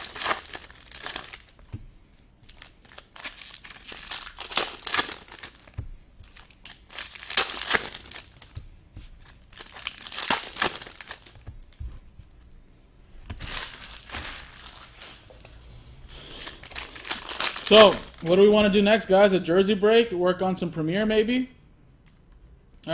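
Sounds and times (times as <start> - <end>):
card pack wrappers tearing: 0.0 - 1.6, 2.4 - 8.6, 9.2 - 11.5, 13.3 - 15.2, 16.1 - 18.5.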